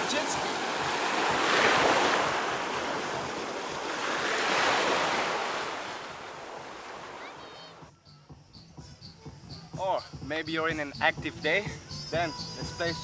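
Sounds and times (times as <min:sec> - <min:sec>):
sea waves washing onto beach: 0:00.0 - 0:07.7.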